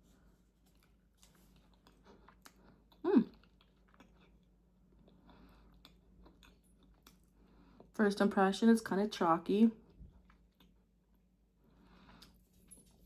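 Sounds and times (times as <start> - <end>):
person chewing: 0.6 - 7.9, 10.1 - 12.5
person humming: 3.0 - 3.3.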